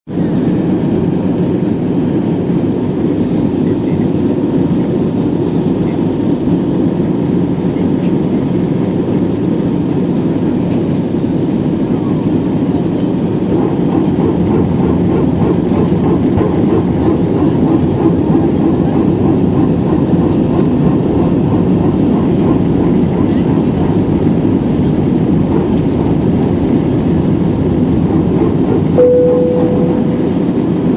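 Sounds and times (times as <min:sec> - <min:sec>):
airplane cabin rumble: 0:00.1 - 0:30.9
faint steady whine: 0:29.0 - 0:30.9.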